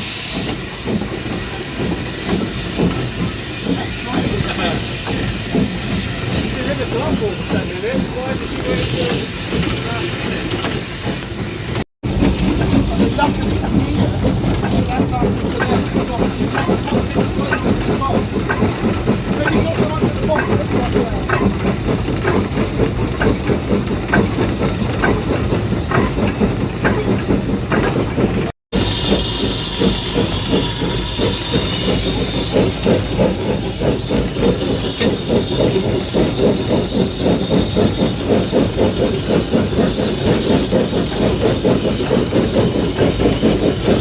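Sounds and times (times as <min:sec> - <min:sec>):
steam hiss: 0:00.0 - 0:18.2
steam train rhythmic clatter: 0:00.0 - 0:44.0.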